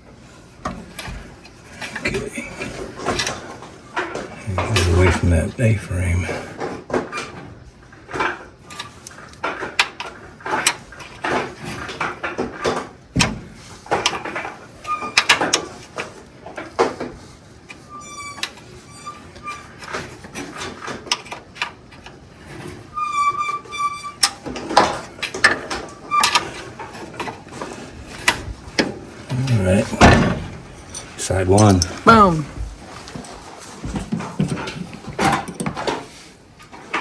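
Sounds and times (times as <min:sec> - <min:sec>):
short high squeaks: 0:17.8 - 0:19.8, 0:22.9 - 0:24.3.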